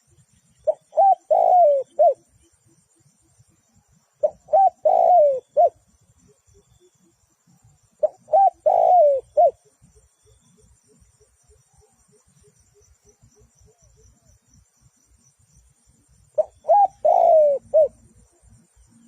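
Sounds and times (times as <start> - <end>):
dove cooing: 0.6 - 2.4, 4.2 - 6.0, 7.9 - 9.9, 16.3 - 18.3.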